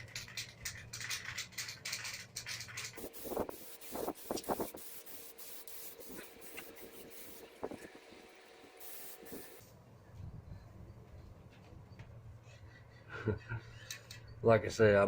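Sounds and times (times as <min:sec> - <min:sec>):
spray can ball rattling: 0:00.0 - 0:09.6
spray paint hiss: 0:02.8 - 0:09.6.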